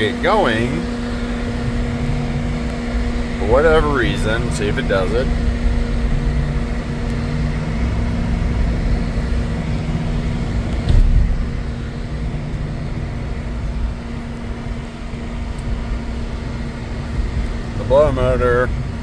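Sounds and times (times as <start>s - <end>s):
blower fan hum: 0.0s - 19.0s
road and engine rumble: 0.0s - 19.0s
thump: 10.8s - 11.4s.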